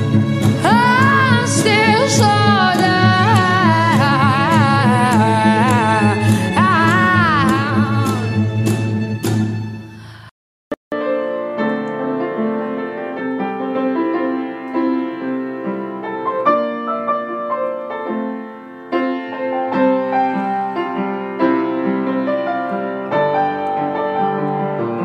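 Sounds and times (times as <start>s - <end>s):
piano-like keyboard melody: 10.9s - 25.0s.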